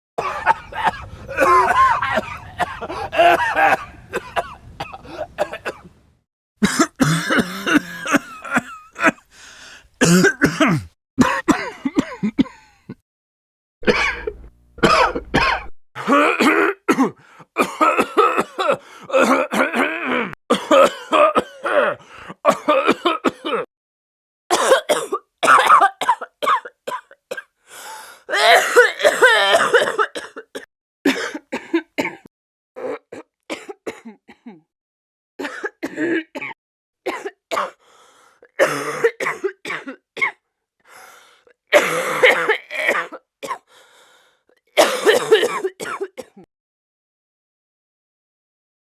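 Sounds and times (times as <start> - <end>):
man coughing: 0.2 - 5.8, 6.6 - 9.3, 10.0 - 12.7, 13.8 - 23.7, 24.5 - 27.5, 28.3 - 34.6, 35.4 - 37.8, 38.6 - 40.3, 41.8 - 43.7, 44.8 - 46.5
woman coughing: 0.2 - 5.8, 6.6 - 9.2, 10.0 - 12.6, 13.8 - 23.7, 24.5 - 27.5, 28.3 - 32.3, 32.9 - 34.7, 35.4 - 37.8, 38.6 - 40.3, 41.8 - 43.7, 44.8 - 46.5.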